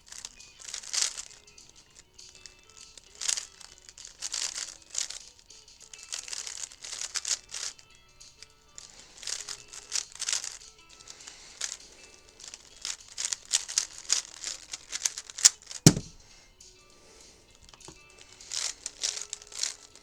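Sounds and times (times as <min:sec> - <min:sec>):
puzzle cube clicking and rattling: 0:00.0 - 0:16.3, 0:17.6 - 0:20.0
sharp knock: 0:15.9 - 0:16.2.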